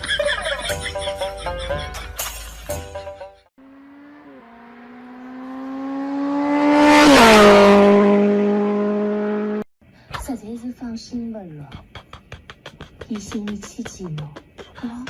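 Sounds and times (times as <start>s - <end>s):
vehicle engine passing by: 3.6s - 9.7s.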